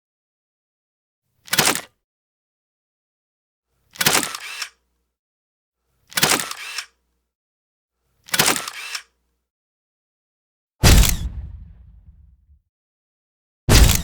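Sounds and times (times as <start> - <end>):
camera shutter clicks: 1.5 - 1.9, 4.0 - 4.8, 6.1 - 7.0, 8.3 - 9.1, 10.8 - 12.3, 13.7 - 14.0.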